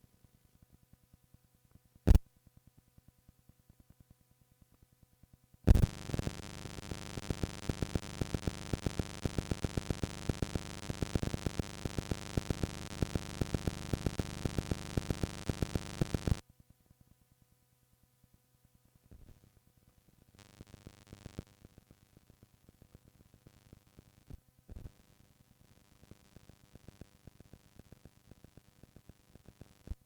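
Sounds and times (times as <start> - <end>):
tape hiss with hum: 2.0 - 2.3, 5.6 - 16.5, 18.1 - 30.0.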